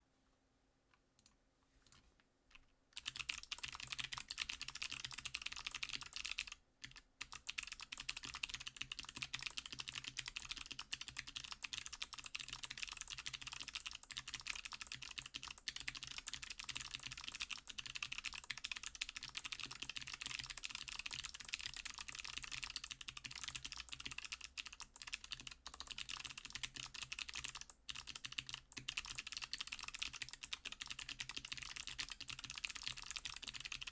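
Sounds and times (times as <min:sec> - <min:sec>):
fast typing on mechanical keyboard: 0:03.0 - 0:33.9.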